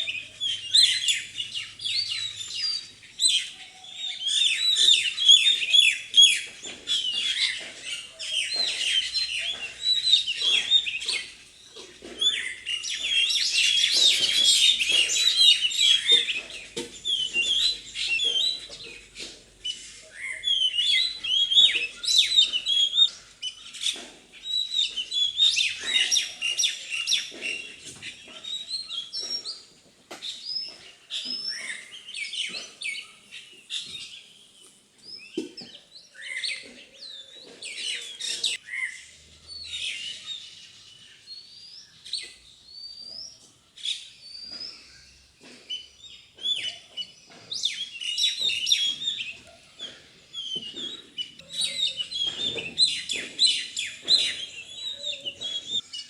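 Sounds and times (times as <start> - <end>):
parrots chattering: 48.6 - 55.8.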